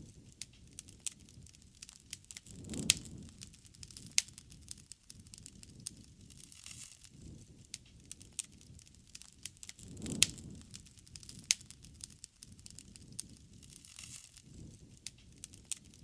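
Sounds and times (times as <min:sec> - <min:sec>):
low rumble of flames: 0:00.0 - 0:16.0
wood fire crackling and popping: 0:00.0 - 0:16.0.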